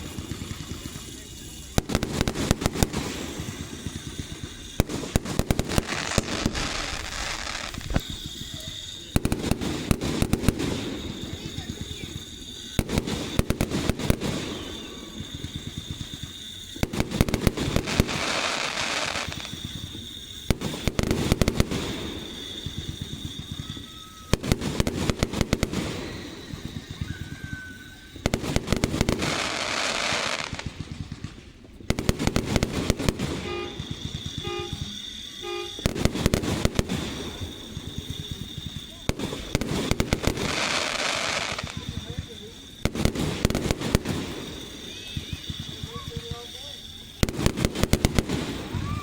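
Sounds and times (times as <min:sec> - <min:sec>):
crackling sizzling firework shells: 0:00.0 - 0:49.0
fireworks bursting: 0:00.0 - 0:49.0
short horn toots: 0:33.4 - 0:35.8.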